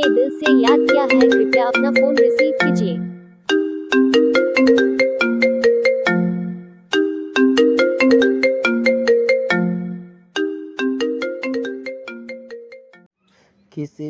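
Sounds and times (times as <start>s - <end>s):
phone ringtone melody: 0.0s - 13.1s.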